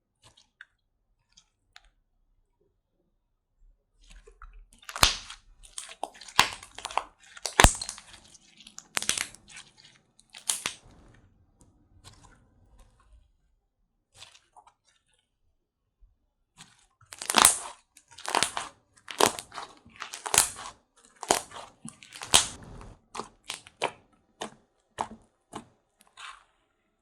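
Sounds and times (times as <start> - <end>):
slime crackling pops: 4.9 - 5.4, 6.3 - 8.2, 8.8 - 9.4, 10.4 - 11.1, 17.1 - 24.0.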